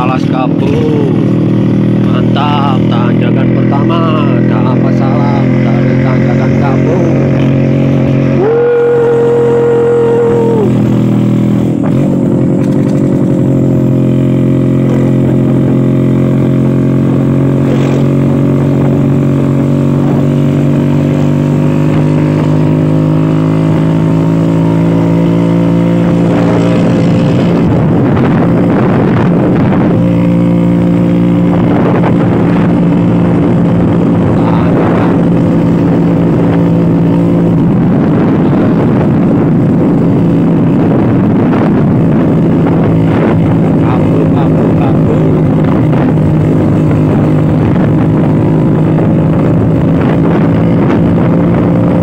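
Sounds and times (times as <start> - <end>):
scooter engine running: 0.0 - 52.0
gusts of noise: 26.0 - 52.0.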